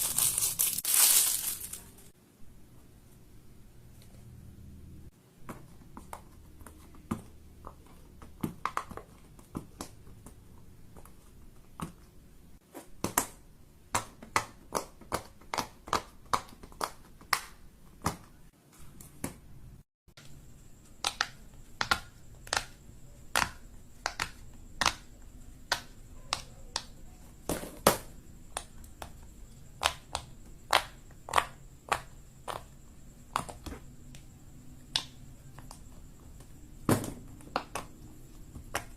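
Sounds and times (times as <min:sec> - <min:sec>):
fidget toys clicking and popping: 0:21.0 - 0:27.0.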